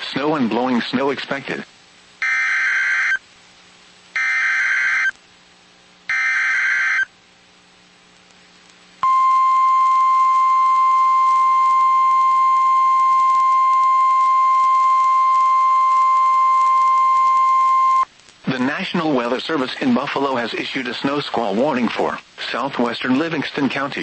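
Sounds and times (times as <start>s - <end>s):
screechy data-tone bursts: 2.2s - 3.2s, 4.2s - 5.1s, 6.1s - 7.1s
steady warning alarm tone: 2.2s - 3.2s, 4.2s - 5.1s, 6.1s - 7.1s, 9.0s - 18.1s.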